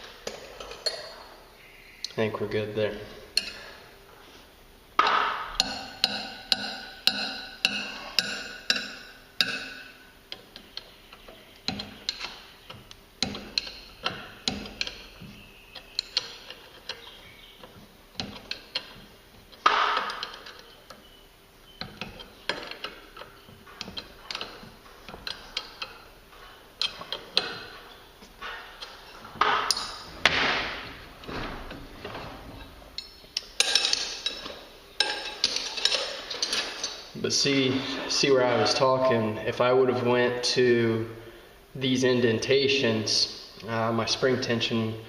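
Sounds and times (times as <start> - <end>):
metal tools clinking: 11.7 - 21.1, 21.8 - 30.1, 31.2 - 37.2.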